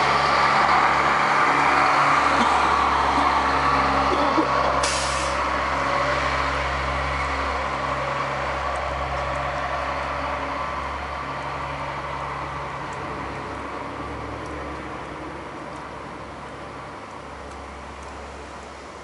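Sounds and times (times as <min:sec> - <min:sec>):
heavy vehicle engine running: 0:00.0 - 0:19.0
short hiss: 0:04.8 - 0:05.4.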